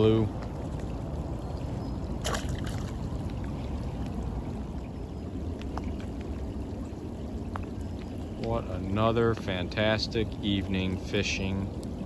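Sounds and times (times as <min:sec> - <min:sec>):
steady rain: 0:00.0 - 0:02.3, 0:02.9 - 0:12.0
fish splashing into water: 0:02.1 - 0:03.4.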